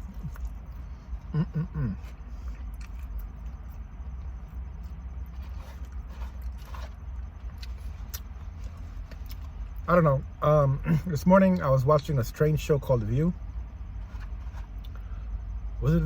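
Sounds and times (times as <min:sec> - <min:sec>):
person chewing: 0:00.0 - 0:09.6
steady low hum: 0:00.0 - 0:16.0.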